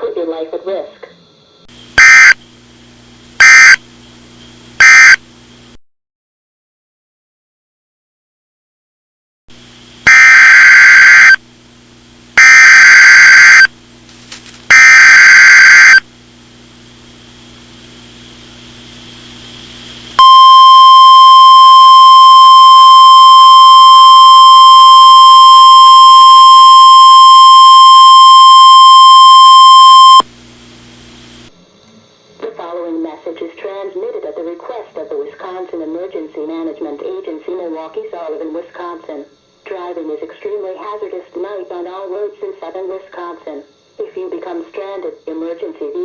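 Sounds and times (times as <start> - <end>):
harsh digital data bursts: 10.1 - 11.4, 12.4 - 13.7, 14.7 - 16.0, 20.2 - 30.2
piercing attention tone: 20.2 - 30.2.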